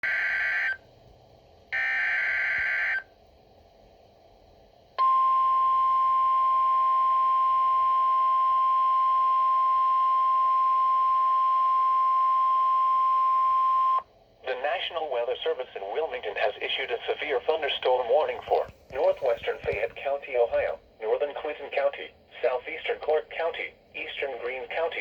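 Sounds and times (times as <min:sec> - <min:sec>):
steady warning alarm tone: 0:00.0 - 0:00.8, 0:01.7 - 0:03.1.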